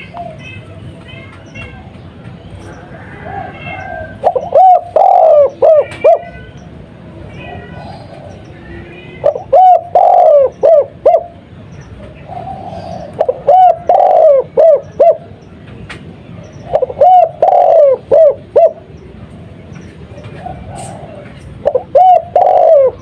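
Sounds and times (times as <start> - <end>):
dove cooing: 2.8 - 6.4, 9.2 - 11.4, 12.0 - 15.4, 16.6 - 19.0, 20.1 - 23.0.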